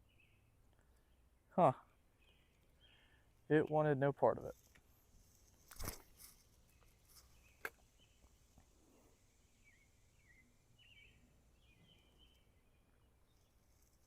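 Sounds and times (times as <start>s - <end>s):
faint bird chirps: 0.0s - 3.2s, 9.4s - 13.9s.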